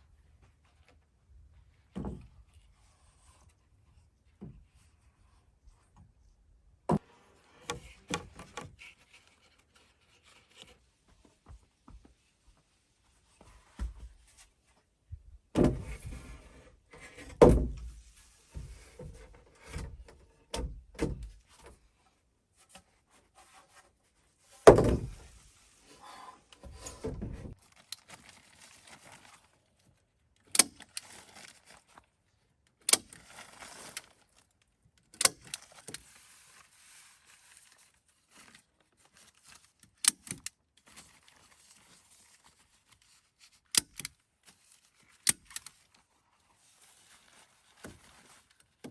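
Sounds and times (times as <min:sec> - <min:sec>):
wood knocks and thuds: 0:17.3 - 0:17.9, 0:24.6 - 0:25.2
rustling: 0:22.0 - 0:34.7, 0:35.4 - 0:40.0, 0:40.8 - 0:48.9.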